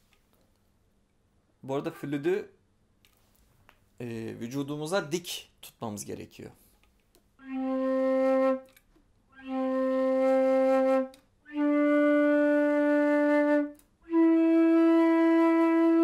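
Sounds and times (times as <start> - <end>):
flute playing long notes: 7.4 - 16.0.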